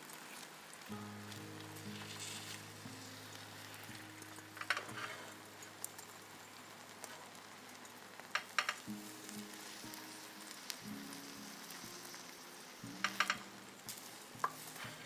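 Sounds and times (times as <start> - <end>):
oil sizzling and crackling: 0.0 - 15.0
soft background music: 0.0 - 15.0.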